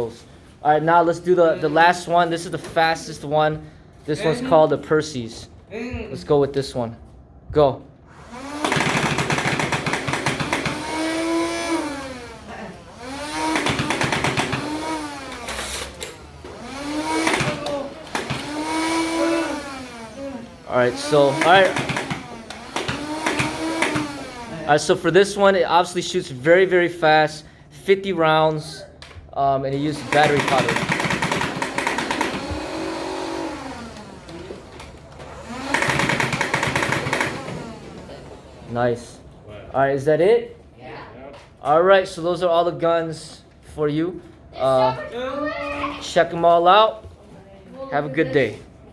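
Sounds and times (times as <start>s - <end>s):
toy blaster motor whining: 8.1s - 24.7s, 29.9s - 38.1s
rapid clicking of rounds firing: 8.5s - 11.2s, 13.1s - 16.1s, 16.8s - 19.0s, 21.0s - 24.3s, 30.1s - 32.6s, 35.6s - 37.6s.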